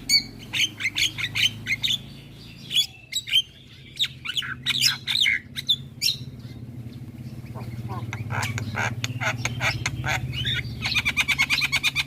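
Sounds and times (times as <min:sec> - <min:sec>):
myna chattering: 0:07.4 - 0:11.8.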